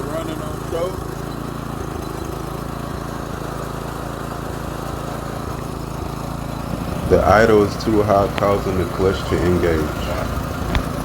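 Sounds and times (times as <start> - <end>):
go-kart engine fast idle: 0.0 - 11.0.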